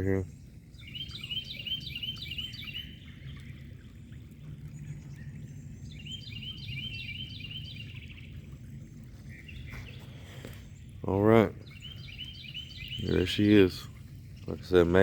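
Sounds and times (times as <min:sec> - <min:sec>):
songbird chirping: 0:00.0 - 0:15.0
water flowing across ground: 0:00.0 - 0:15.0.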